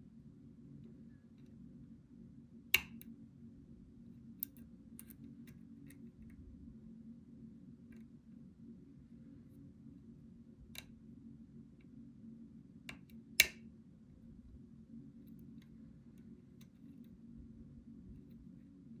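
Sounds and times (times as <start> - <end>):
low steady hum: 0.0 - 19.0
lock-picking tools clicking: 4.4 - 5.2.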